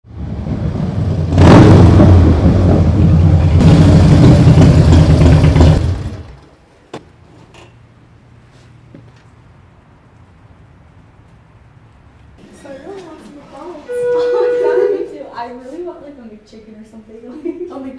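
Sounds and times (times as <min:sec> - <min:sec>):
loud engine running: 0:00.1 - 0:06.4.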